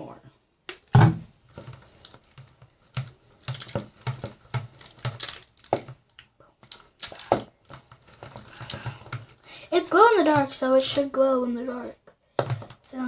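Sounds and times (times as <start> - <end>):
spoon stirring sticky slime: 1.3 - 11.2.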